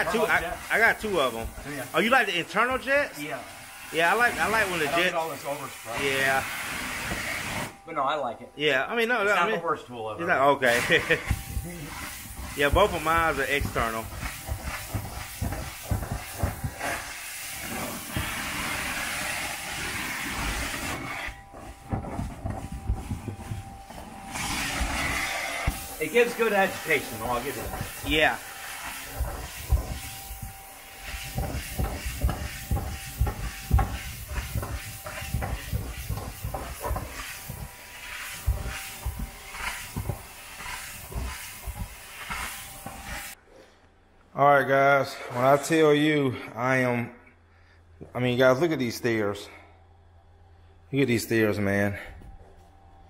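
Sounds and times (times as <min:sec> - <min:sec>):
carpet extractor spraying and suctioning: 0:00.0 - 0:07.8, 0:10.2 - 0:43.4.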